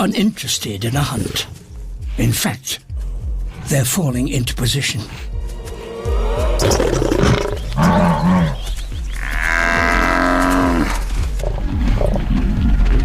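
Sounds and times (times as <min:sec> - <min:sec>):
animal growling calls: 0:05.4 - 0:11.1.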